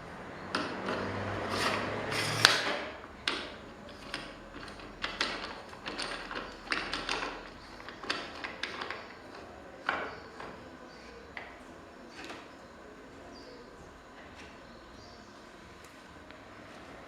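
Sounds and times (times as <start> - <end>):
scraping strokes: 0.7 - 2.9.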